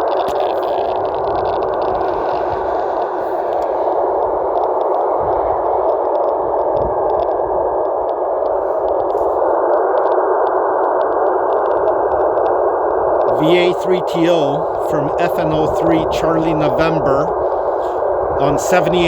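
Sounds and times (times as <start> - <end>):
radio receiver hiss: 0.0 - 7.2, 10.8 - 19.0
faint clicks: 0.0 - 13.4.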